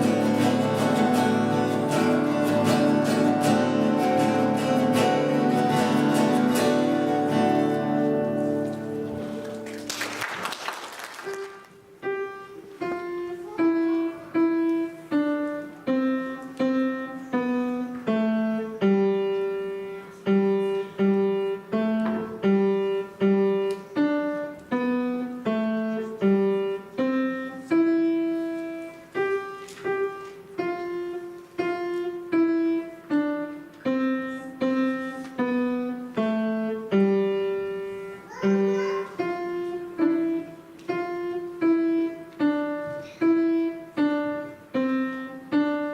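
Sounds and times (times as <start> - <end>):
slow solo piano melody: 11.3 - 45.9.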